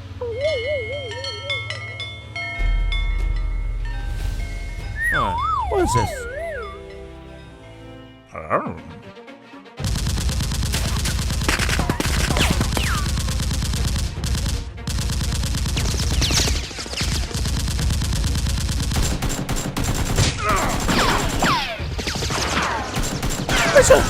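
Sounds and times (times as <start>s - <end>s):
falling whistle-like tones: 0.2s - 2.8s, 4.8s - 7.0s
rapid automatic gunfire: 9.8s - 24.0s.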